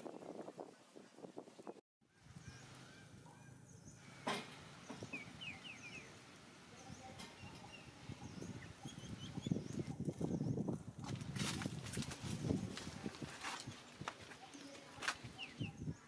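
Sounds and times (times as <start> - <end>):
high chirping calls: 4.8 - 10.8
rustling and scuffling: 11.0 - 15.4.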